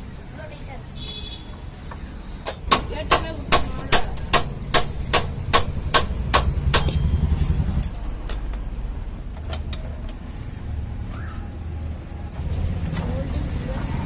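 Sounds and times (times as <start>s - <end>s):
hammer blows: 2.5s - 8.0s.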